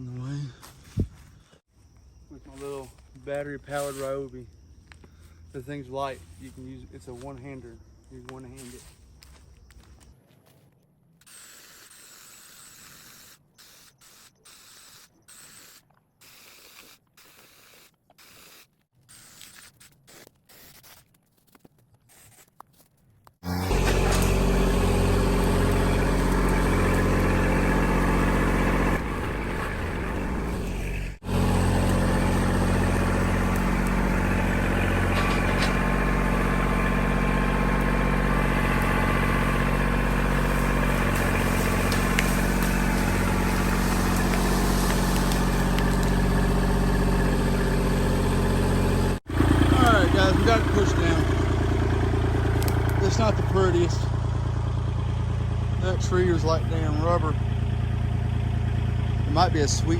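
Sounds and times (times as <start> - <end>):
tractor diesel engine running: 23.4 - 59.9.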